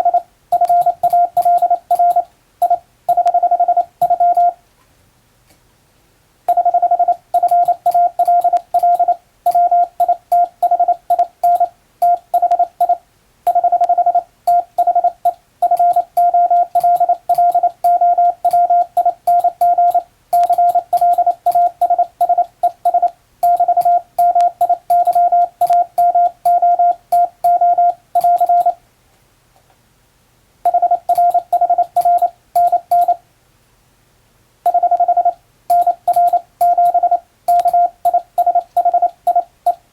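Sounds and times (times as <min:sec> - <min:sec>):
morse code tone: 0:00.0 - 0:04.6, 0:06.5 - 0:28.8, 0:30.7 - 0:33.2, 0:34.7 - 0:39.8.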